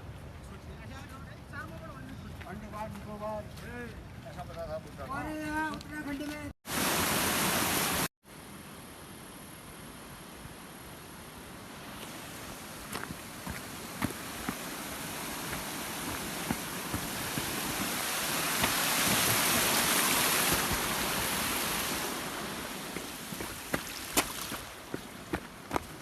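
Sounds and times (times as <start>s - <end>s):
stream water rushing: 6.7s - 8.1s, 11.4s - 26.0s.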